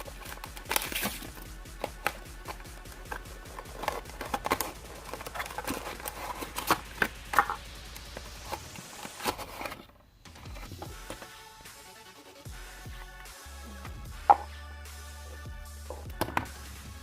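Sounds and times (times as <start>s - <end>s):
plastic packaging being handled: 0.0s - 11.2s.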